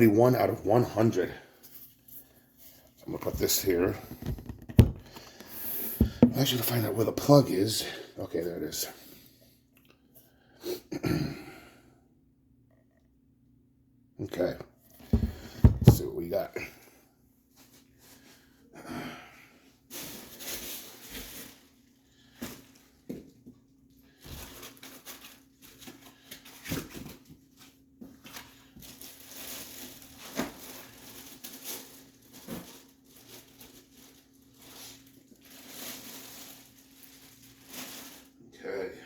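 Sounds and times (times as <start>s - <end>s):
sharp knocks of objects set down: 6.0s - 6.4s.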